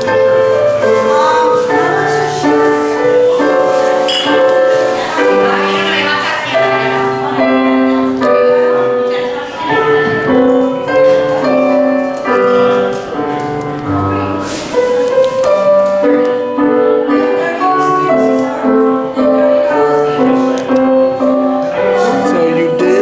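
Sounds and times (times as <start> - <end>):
keyboard melody over chords: 0.0 - 23.0.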